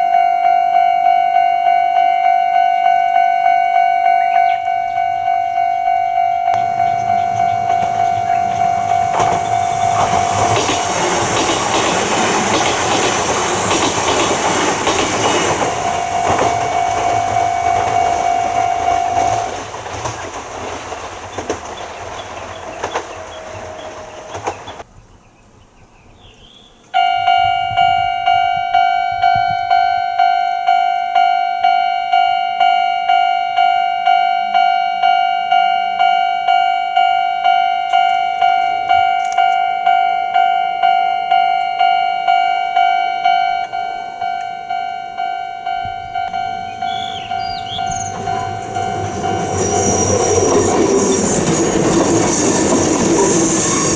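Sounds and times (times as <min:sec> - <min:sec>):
level crossing alarm bell: 0:00.0 - 0:19.6, 0:27.0 - 0:53.9
train rumbling and clattering: 0:05.9 - 0:25.2, 0:26.8 - 0:30.8, 0:36.0 - 0:53.9.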